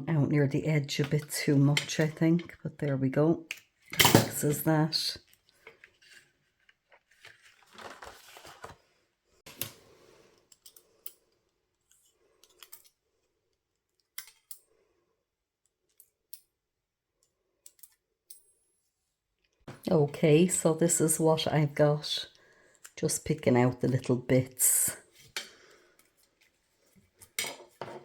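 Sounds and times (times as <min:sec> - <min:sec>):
rustling of cardstock: 0:05.6 - 0:09.6.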